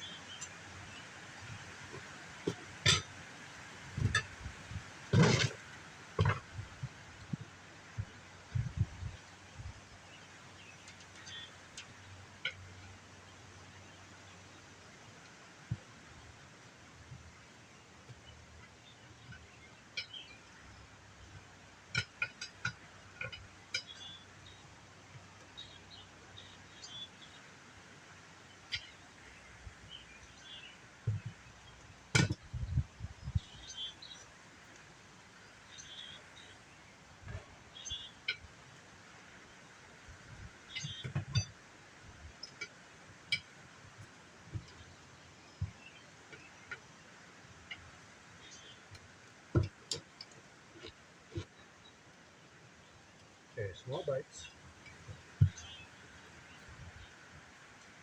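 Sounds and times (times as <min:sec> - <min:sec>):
tire irons clinking on wheel rim: 0:01.8 - 0:03.3, 0:04.0 - 0:08.1, 0:10.6 - 0:13.0, 0:18.1 - 0:24.6, 0:39.3 - 0:51.7.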